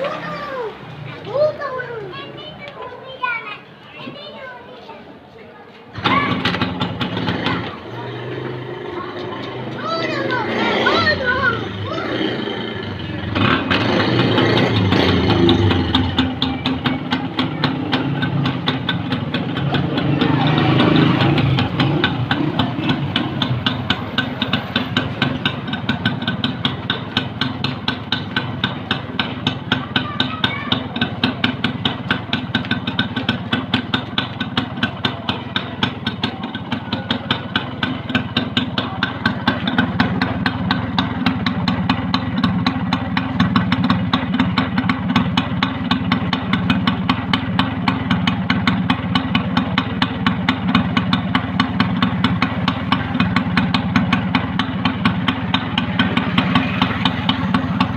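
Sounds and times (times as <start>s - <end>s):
two-stroke engine idling: 6.0s - 57.9s.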